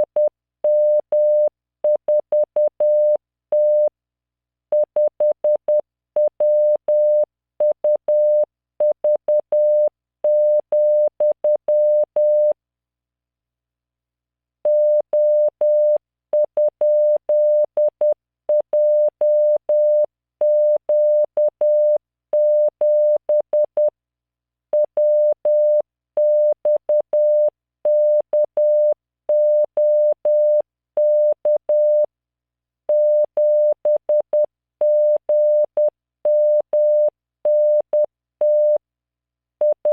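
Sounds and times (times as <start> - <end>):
morse code tone: 32.9 - 38.8.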